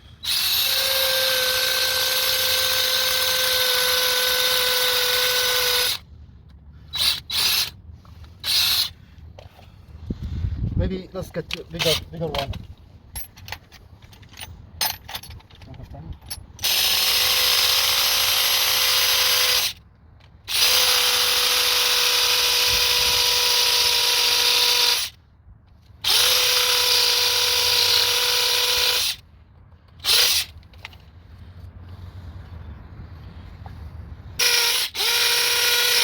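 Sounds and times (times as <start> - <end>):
electric drill boring into metal: 0.2 - 6.0, 20.5 - 25.1, 26.0 - 29.2, 34.4 - 36.0.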